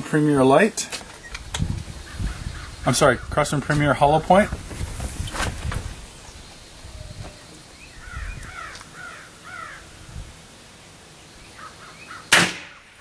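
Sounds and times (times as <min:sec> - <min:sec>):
bird cawing: 0:07.9 - 0:10.0, 0:11.5 - 0:13.0
air rifle shot: 0:12.3 - 0:12.9.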